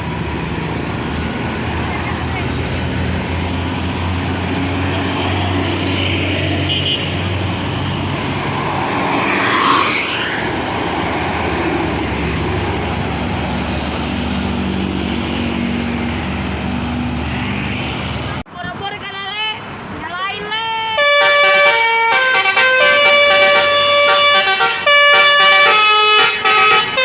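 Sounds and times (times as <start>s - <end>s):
vehicle passing close: 0.0s - 18.4s
heavy vehicle engine drone: 0.0s - 18.5s.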